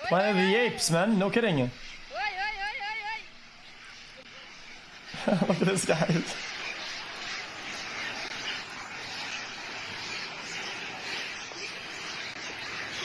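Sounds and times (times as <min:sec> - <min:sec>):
outdoor street ambience: 0:01.8 - 0:13.0.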